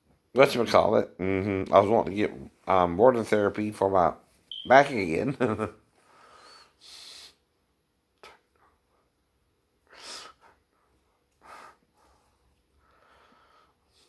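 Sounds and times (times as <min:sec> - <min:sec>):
person breathing or sniffing: 0:06.0 - 0:07.4, 0:09.8 - 0:10.7, 0:11.4 - 0:14.0.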